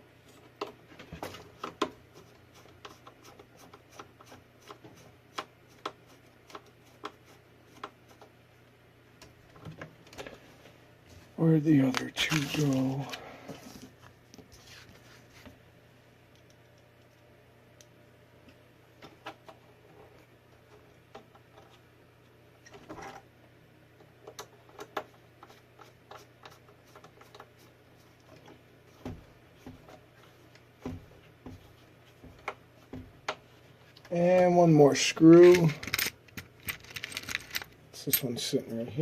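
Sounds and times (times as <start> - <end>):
clicks of small parts handled: 35.4 - 38.3.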